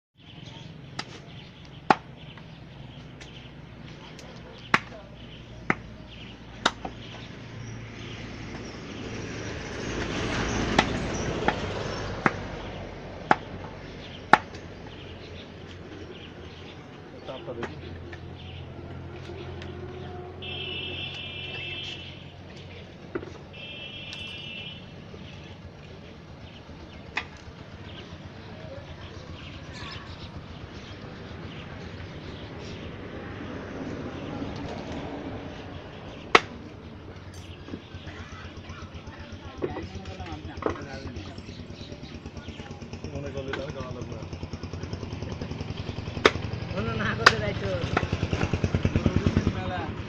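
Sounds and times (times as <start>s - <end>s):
traffic noise rumbling: 0.2s - 50.0s
cleaver chopping meat: 10.6s - 12.6s, 13.2s - 14.6s, 46.2s - 46.6s.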